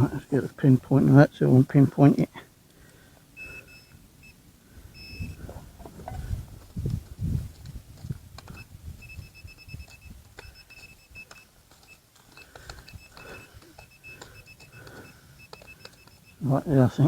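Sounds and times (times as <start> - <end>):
metal detector pinpointer beeping: 3.4 - 5.5, 8.4 - 17.0
soil being handled: 5.3 - 17.0.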